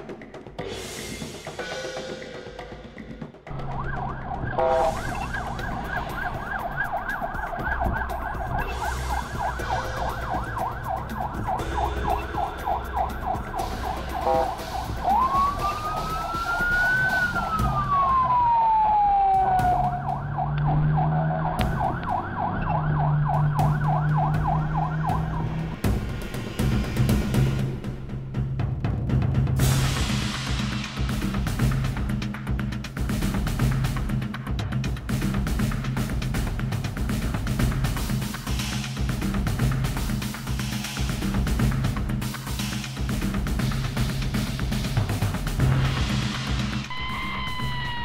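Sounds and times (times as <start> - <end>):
siren warbling yelp: 3.5 - 26.0, 46.9 - 48.0
siren slow wail: 3.5 - 27.8, 46.9 - 48.0.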